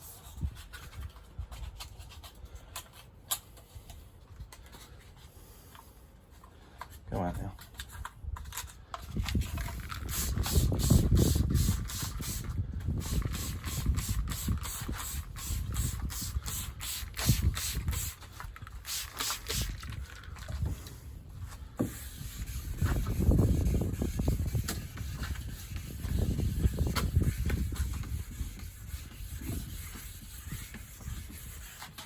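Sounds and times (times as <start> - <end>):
sandpaper rubbing strokes: 9.4 - 20.0, 21.4 - 32.0.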